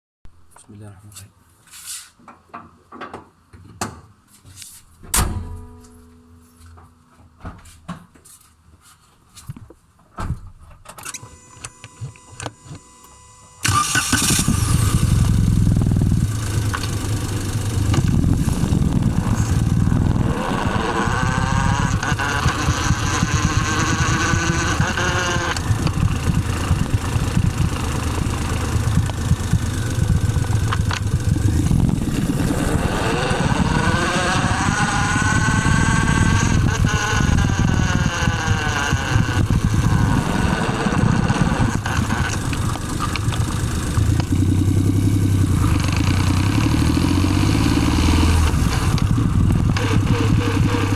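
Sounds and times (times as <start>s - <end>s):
gearbox whine: 11.0s - 44.5s, 48.4s - 50.9s
car engine rumble: 13.6s - 50.9s.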